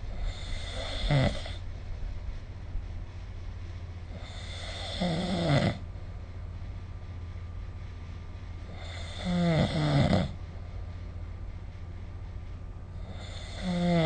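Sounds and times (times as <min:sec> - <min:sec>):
steady low hum: 0:00.0 - 0:14.0
person snoring: 0:00.3 - 0:01.6, 0:04.2 - 0:05.8, 0:08.8 - 0:10.4, 0:13.1 - 0:14.0.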